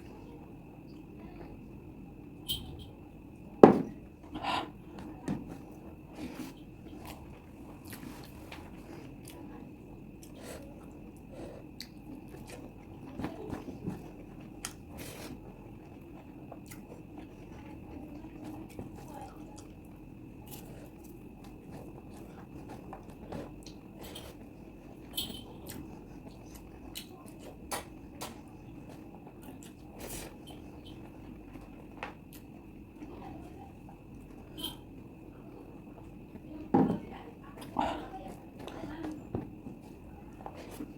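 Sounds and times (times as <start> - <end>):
faint steady hum: 0.0 - 40.9
chewing and wet mouth sounds: 5.6 - 33.2.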